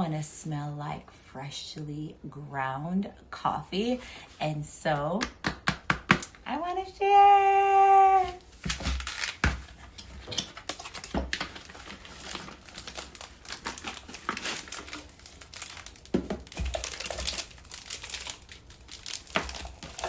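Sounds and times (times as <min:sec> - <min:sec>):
plastic and paper tearing: 0:08.2 - 0:20.0
packaging crinkling and rustling: 0:08.3 - 0:20.0.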